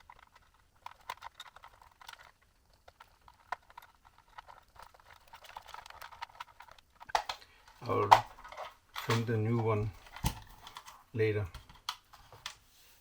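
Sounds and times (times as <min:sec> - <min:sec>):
plastic clicks and scrapes: 0:00.0 - 0:09.2.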